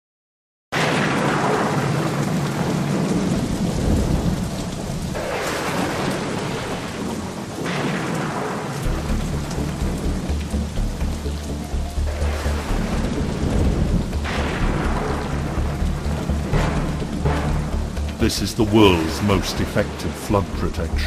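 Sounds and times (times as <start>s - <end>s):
rumbling thunder: 0.8s - 11.1s, 12.0s - 18.2s
heavy rain: 0.8s - 21.0s
low pulsing beat: 8.8s - 21.0s.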